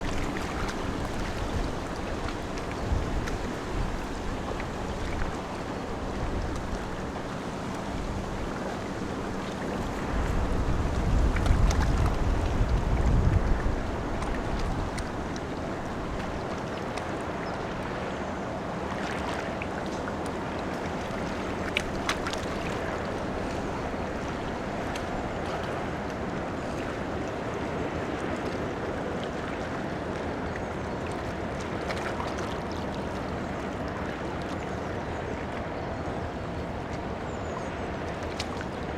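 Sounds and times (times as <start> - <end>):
wind buffeting microphone: 0.0 - 16.5
rush of water: 0.0 - 38.9
ship engine low rumble: 0.0 - 38.9.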